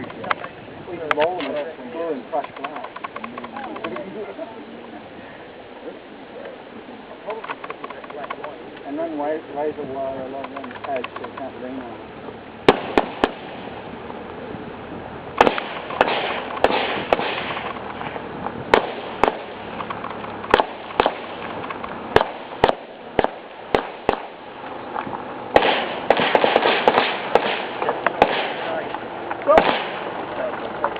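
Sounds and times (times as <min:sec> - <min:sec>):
rifle shots with echo: 0:12.6 - 0:13.8, 0:15.4 - 0:17.7, 0:18.7 - 0:21.5, 0:22.1 - 0:24.4, 0:25.5 - 0:28.8, 0:29.5 - 0:30.3.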